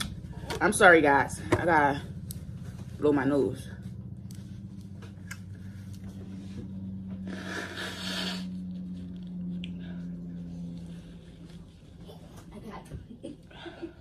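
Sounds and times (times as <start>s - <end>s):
low hum: 0.0s - 14.0s
nose blowing into tissue: 7.2s - 8.6s.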